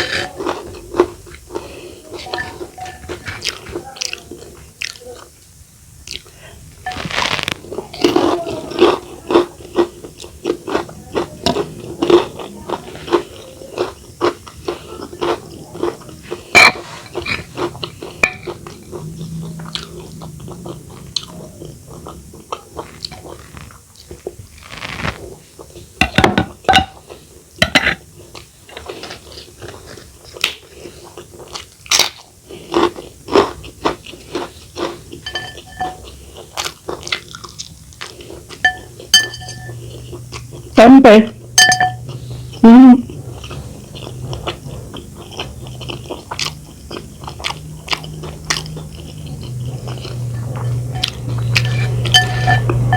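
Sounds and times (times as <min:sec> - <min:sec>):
crunching and chewing: 0:00.0 - 0:40.8, 0:41.4 - 0:52.9
light ringing clinks: 0:35.3 - 0:36.0, 0:38.6 - 0:39.8, 0:41.6 - 0:42.1, 0:50.3 - 0:52.9.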